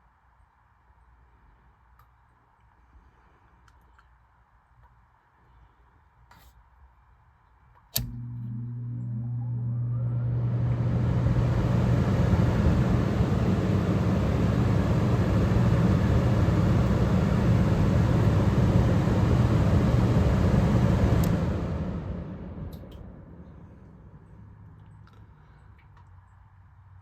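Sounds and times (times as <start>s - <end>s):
low electrical hum: 0.0s - 27.0s
air conditioner click: 7.8s - 21.5s
air conditioner blower rushing: 8.0s - 24.5s.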